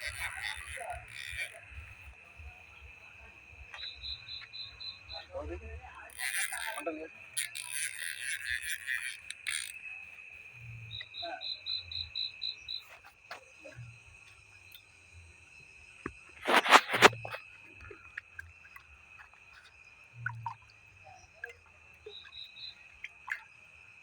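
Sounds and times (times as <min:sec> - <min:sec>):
night insects chirring: 0:00.0 - 0:24.0
quick pulsed insect calls: 0:00.0 - 0:24.0.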